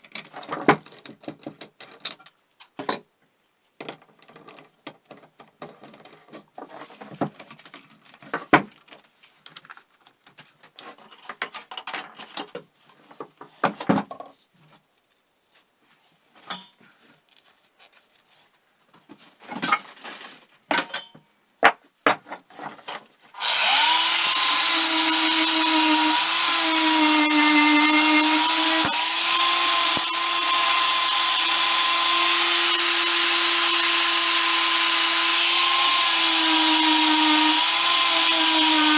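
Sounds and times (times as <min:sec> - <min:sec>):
metal parts clicking and knocking: 0:00.0 - 0:03.0
power tool running: 0:23.4 - 0:38.9.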